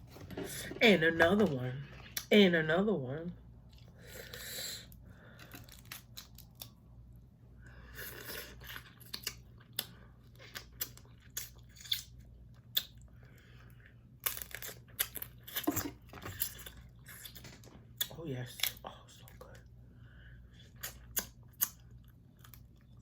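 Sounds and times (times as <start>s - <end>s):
close-up chewing: 7.9s - 19.7s, 20.3s - 23.0s.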